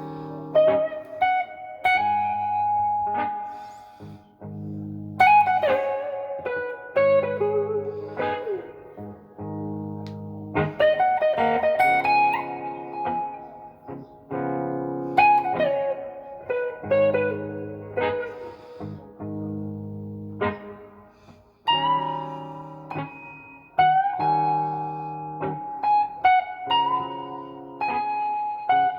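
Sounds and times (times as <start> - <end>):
electric guitar blues lead: 0.0 - 28.9.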